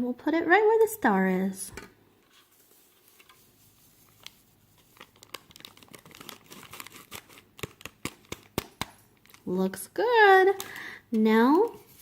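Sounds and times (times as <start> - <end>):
powder packet crinkling: 2.5 - 9.8.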